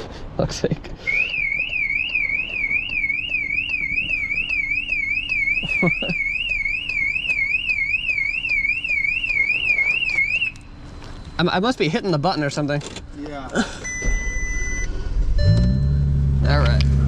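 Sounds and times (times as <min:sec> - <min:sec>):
car alarm siren: 0:01.1 - 0:11.0.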